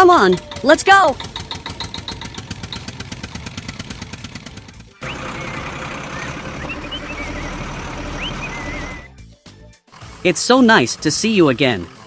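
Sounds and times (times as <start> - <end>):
small engine puttering: 0.0 - 9.1, 9.9 - 12.0
rumbling ambience: 4.6 - 9.1.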